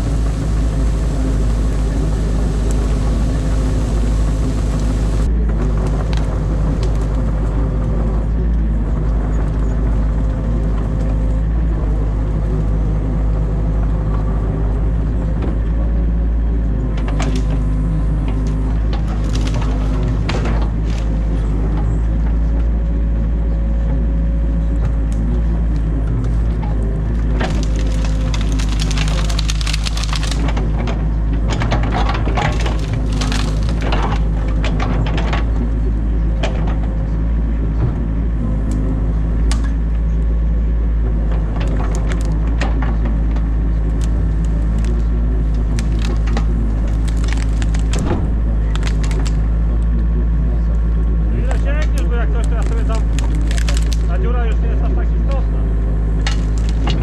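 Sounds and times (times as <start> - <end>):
branches cracking and snapping: 0.0 - 7.5, 17.0 - 21.9, 27.1 - 35.5, 39.4 - 39.8, 41.6 - 49.6, 51.4 - 54.5, 55.9 - 57.0
excavator engine running: 0.0 - 57.0.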